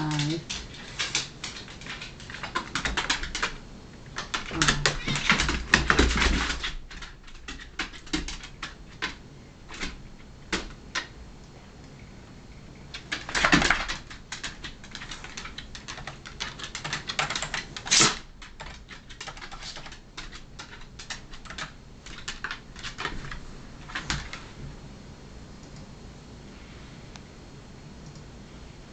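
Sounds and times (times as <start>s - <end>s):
cat and dog scuffling: 0.0s - 11.1s, 12.9s - 24.7s.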